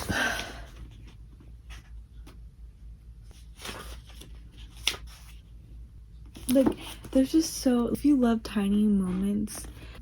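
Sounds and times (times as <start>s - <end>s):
book pages rustling: 3.2s - 5.5s, 6.2s - 7.4s.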